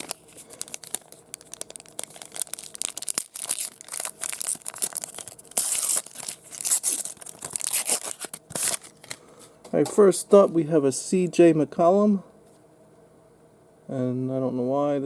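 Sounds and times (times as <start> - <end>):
wrapper tearing and crinkling: 0.0 - 9.2.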